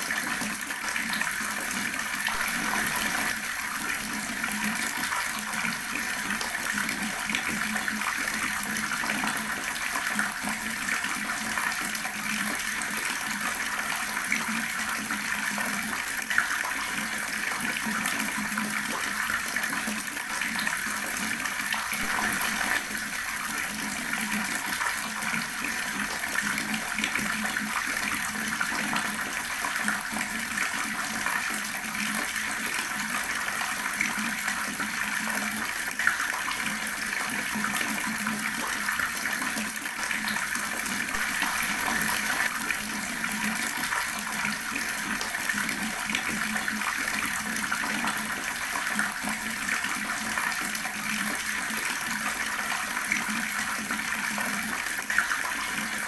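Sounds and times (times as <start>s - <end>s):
water tap running: 1.0s - 12.6s, 19.5s - 33.1s, 39.2s - 51.5s.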